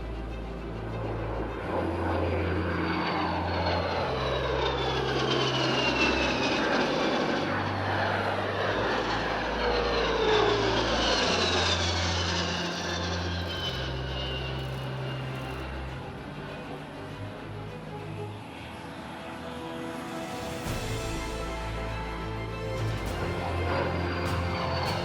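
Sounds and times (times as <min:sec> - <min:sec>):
jet engines flying past: 0:00.0 - 0:25.0.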